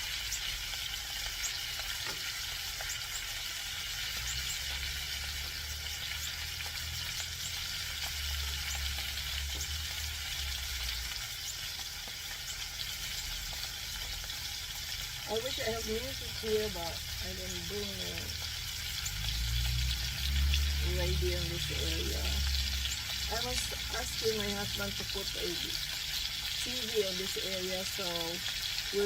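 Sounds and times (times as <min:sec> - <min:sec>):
fish sizzling in hot oil: 0:00.0 - 0:29.0
low rumble: 0:15.3 - 0:26.0.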